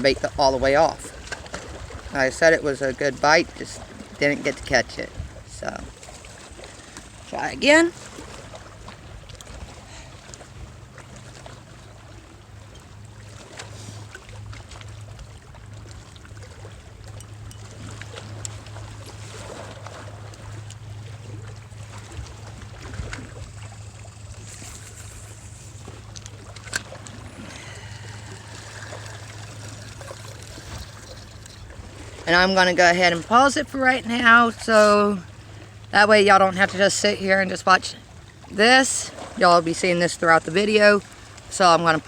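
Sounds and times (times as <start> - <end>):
water lapping: 0.0 - 42.0
steady low hum: 3.5 - 36.0.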